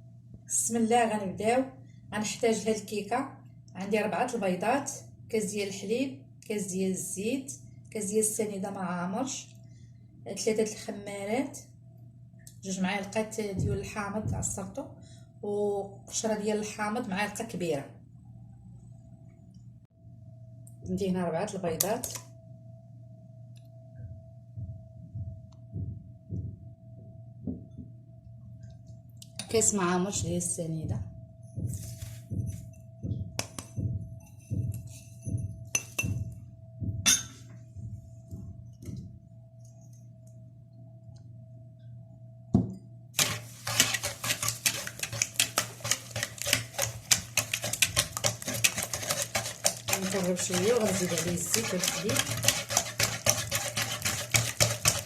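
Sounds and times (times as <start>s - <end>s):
beater clicking against bowl: 43.2s - 55.0s.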